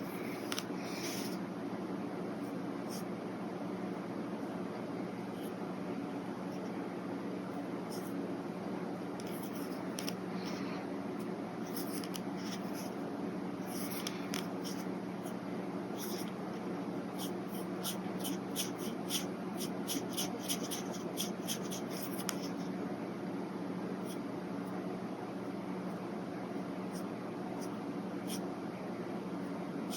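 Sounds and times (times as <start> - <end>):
steady low hum: 0.0 - 29.9.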